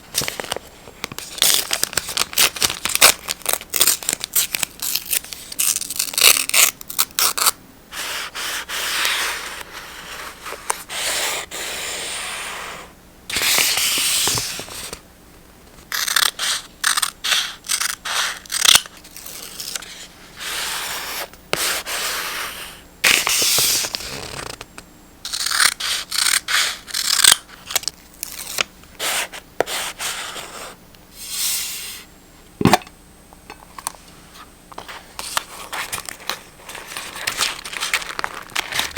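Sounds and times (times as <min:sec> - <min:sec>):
paper crackling and tapping: 0:34.8 - 0:38.9.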